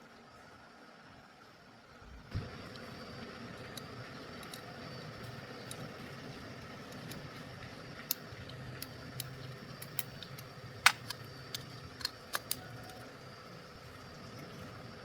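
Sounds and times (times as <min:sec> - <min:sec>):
metal parts and tools clicking: 0:09.2 - 0:13.0.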